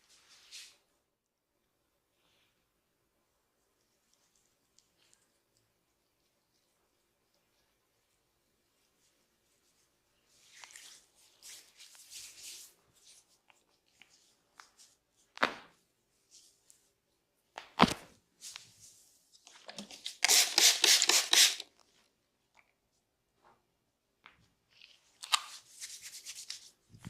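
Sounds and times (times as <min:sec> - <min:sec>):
hands rubbing skin and hair: 0:08.7 - 0:15.5, 0:25.3 - 0:27.0.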